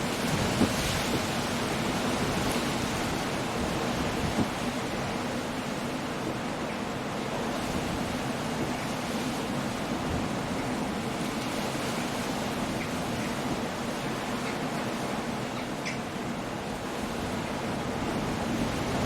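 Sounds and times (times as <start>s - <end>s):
wind: 0.0s - 19.0s.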